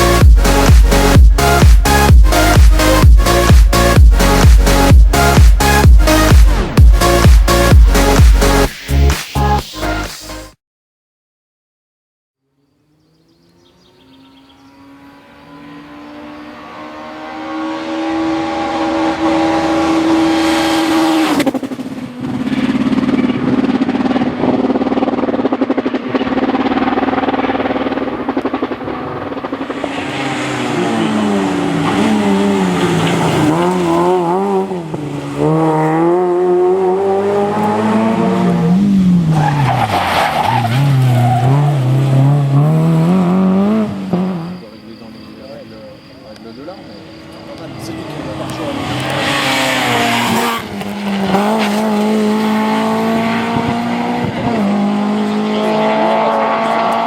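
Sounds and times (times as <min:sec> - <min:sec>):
rally car engine revving: 0:12.5 - 0:45.6, 0:46.3 - 0:57.0.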